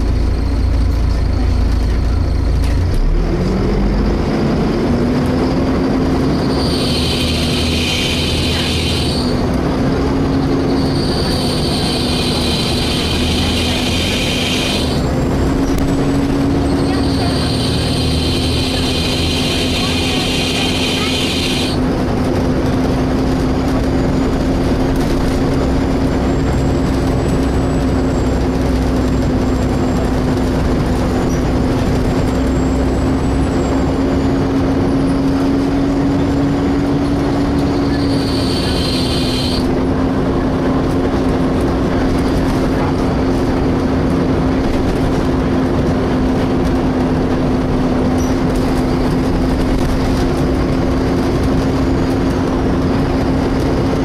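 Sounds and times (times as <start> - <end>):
bus running: 0.0 - 54.0
short high-pitched screech: 6.4 - 9.4, 10.7 - 15.1, 16.8 - 21.8, 37.8 - 39.7.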